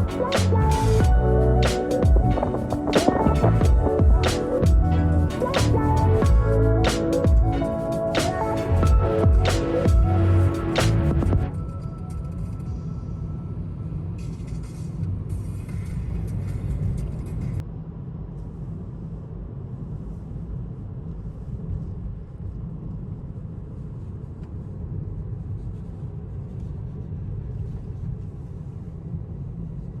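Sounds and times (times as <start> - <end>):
background music: 0.0 - 14.5.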